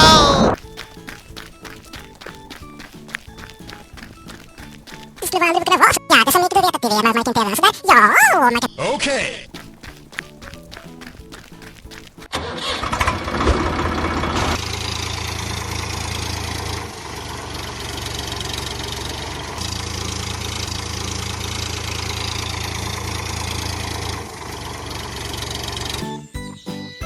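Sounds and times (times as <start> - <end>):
tractor engine idling: 12.2 - 26.1.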